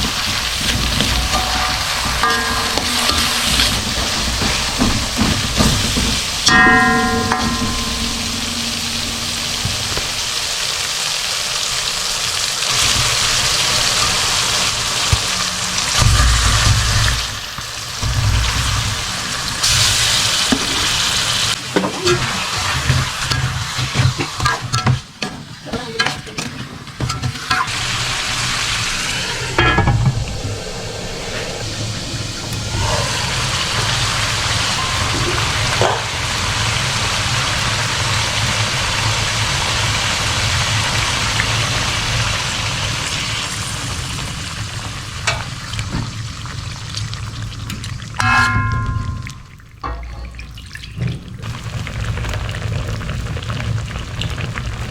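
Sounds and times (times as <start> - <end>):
low hum: 0.0 - 20.0, 27.7 - 41.9
food sizzling in a pan: 0.0 - 25.0
short pitched tone: 0.8 - 4.2, 6.5 - 11.1, 28.5 - 36.7.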